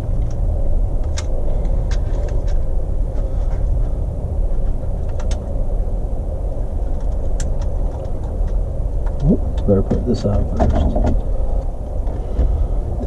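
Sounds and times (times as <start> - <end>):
low rumble: 0.0 - 13.0.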